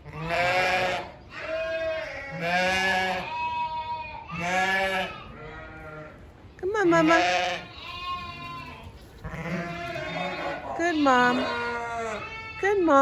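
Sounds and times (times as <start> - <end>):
sheep bleating: 0.0 - 6.2, 6.9 - 13.0.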